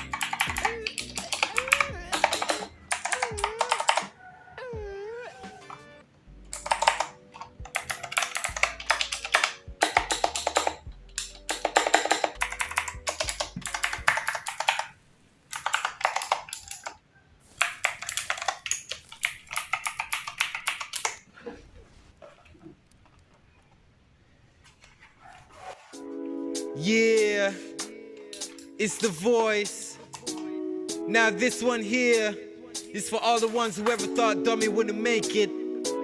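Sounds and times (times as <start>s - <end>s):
mechanical keyboard typing: 0.0s - 4.1s, 6.5s - 17.0s, 17.6s - 21.2s, 33.6s - 34.4s.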